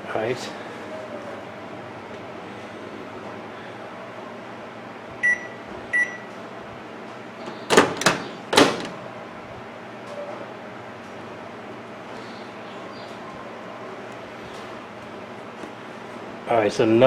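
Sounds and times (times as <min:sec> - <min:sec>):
microwave short beeps: 0:05.2 - 0:06.3.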